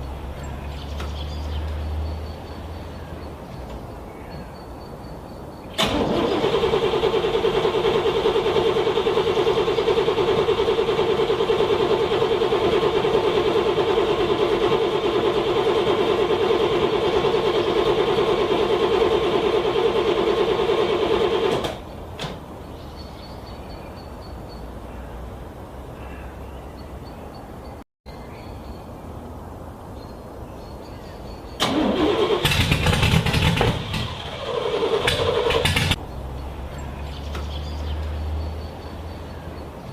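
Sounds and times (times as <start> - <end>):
car starter cranking engine: 5.7 - 21.9, 31.6 - 36.0.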